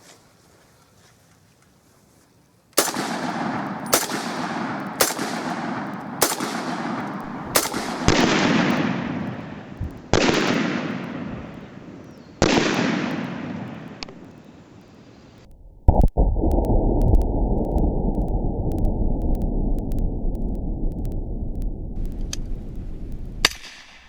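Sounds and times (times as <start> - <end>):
rifle shots echoing: 2.8 - 14.3, 22.0 - 24.0.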